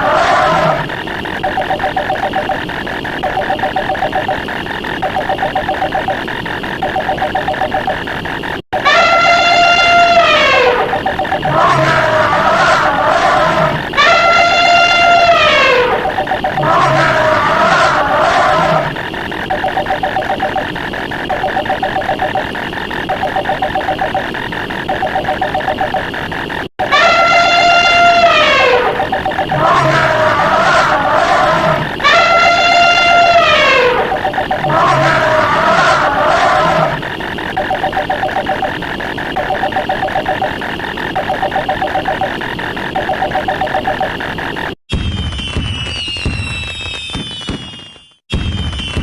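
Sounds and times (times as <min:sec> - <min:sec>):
rapid clicks: 0:00.9 - 0:09.8, 0:10.8 - 0:11.9, 0:16.0 - 0:16.9, 0:18.9 - 0:27.8, 0:29.0 - 0:32.6, 0:34.1 - 0:34.9, 0:37.0 - 0:44.8
rapid ticking: 0:00.9 - 0:17.1, 0:18.9 - 0:33.0, 0:33.6 - 0:36.4, 0:37.0 - 0:44.8
trilling telephone rings: 0:01.4 - 0:04.4, 0:05.0 - 0:06.2, 0:06.8 - 0:08.0, 0:08.8 - 0:11.8, 0:13.9 - 0:16.9, 0:19.4 - 0:24.3, 0:24.9 - 0:26.1, 0:26.8 - 0:31.4, 0:32.0 - 0:36.3, 0:37.5 - 0:44.2.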